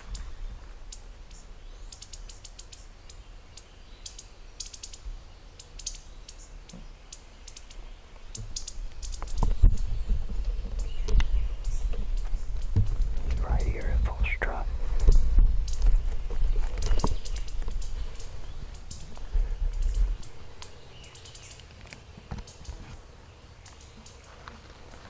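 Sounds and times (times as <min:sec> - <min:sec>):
songbirds chirping: 0:00.0 - 0:25.0
low rumbling: 0:08.9 - 0:20.8.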